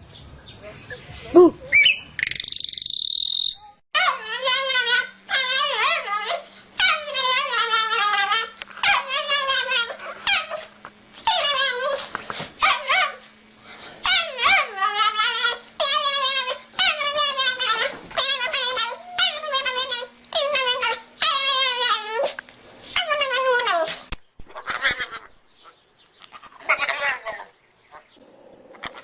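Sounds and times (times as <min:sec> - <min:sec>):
dog whining and yowling: 0:04.0 - 0:13.2, 0:14.0 - 0:22.4, 0:23.0 - 0:24.0.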